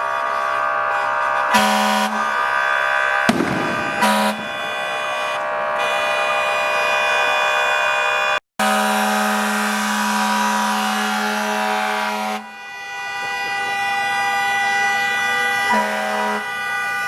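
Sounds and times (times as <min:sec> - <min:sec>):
low-pitched horn blasts: 0:00.3 - 0:02.7, 0:03.3 - 0:17.0
car horns honking: 0:00.9 - 0:02.6, 0:03.3 - 0:13.8, 0:15.2 - 0:17.0
sharp bang: 0:03.3 - 0:05.0.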